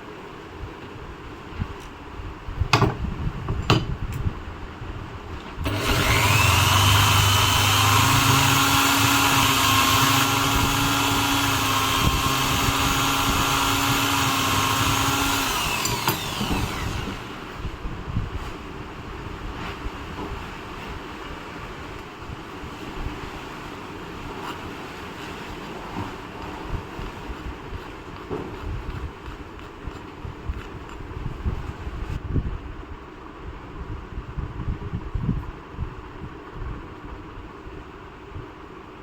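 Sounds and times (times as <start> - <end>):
electric drill motor whining: 5.6 - 17.7.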